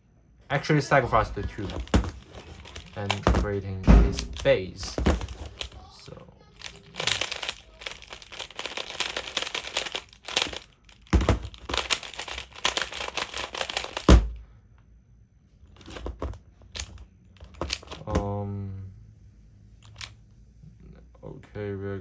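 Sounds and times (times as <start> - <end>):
plastic puzzle tiles clicking: 6.6 - 14.1.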